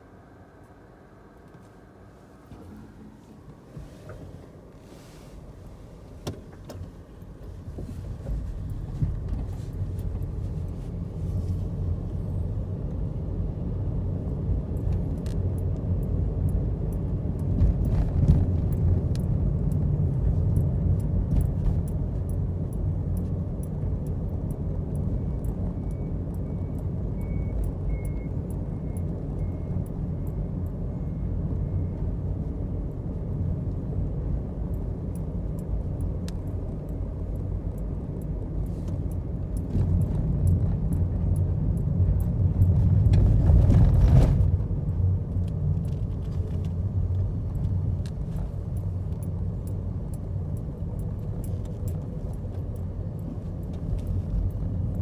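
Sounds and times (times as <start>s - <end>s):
car engine and road rumble: 0.0s - 55.0s.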